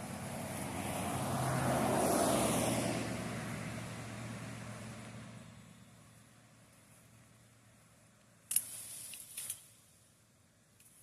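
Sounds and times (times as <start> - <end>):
vehicle passing by: 0.0 - 7.8.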